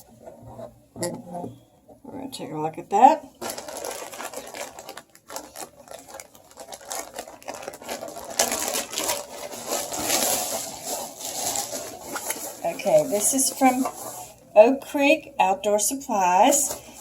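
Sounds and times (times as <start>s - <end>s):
packaging rustling and crinkling: 0.0s - 1.2s, 3.3s - 14.5s, 16.4s - 17.0s.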